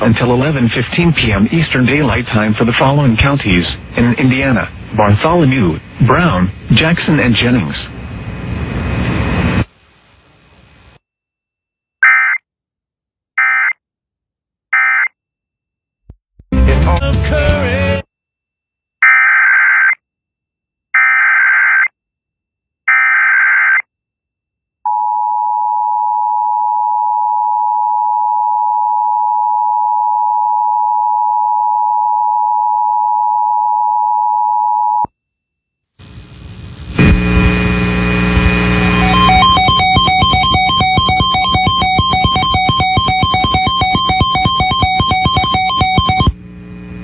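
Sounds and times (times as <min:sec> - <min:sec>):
buzzy digital data bursts: 0:37.0 - 0:46.3
steady alert tone: 0:39.0 - 0:46.3.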